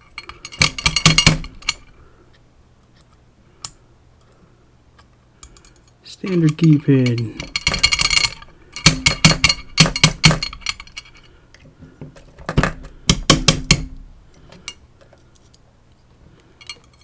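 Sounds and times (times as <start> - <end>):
small metal lock parts clinking: 0.1 - 1.9, 5.4 - 11.3.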